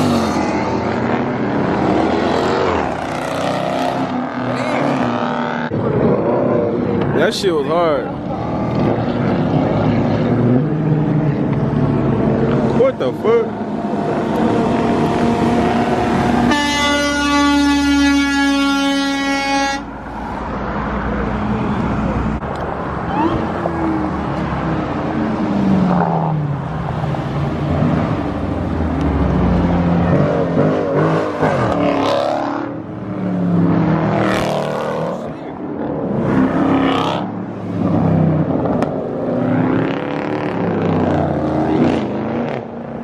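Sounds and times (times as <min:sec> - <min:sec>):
vehicle horn held: 0:16.5 - 0:19.9.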